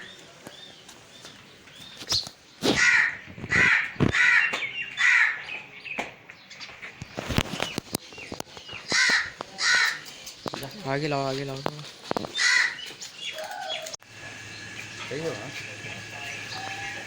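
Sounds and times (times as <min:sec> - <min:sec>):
crows cawing: 0:02.8 - 0:05.5, 0:08.9 - 0:10.2, 0:12.3 - 0:13.9.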